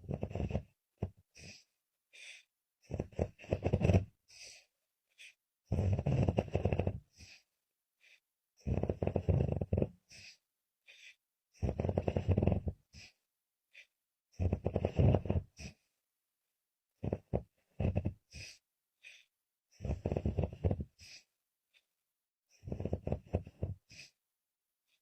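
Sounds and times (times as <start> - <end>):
woman snoring: 8.6 - 10.3, 11.6 - 12.8, 19.2 - 21.3, 22.6 - 24.2.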